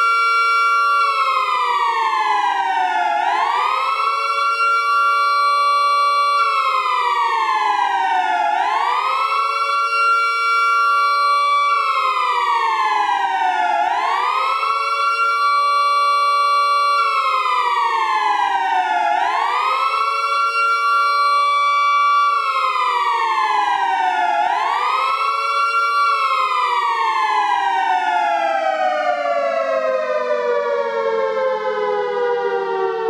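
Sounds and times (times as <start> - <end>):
air raid siren wailing: 0.0 - 33.0.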